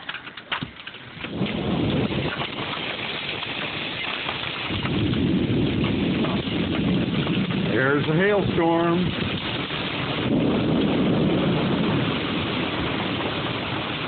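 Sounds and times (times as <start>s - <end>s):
hail and rain pelting roof: 0.0s - 14.0s.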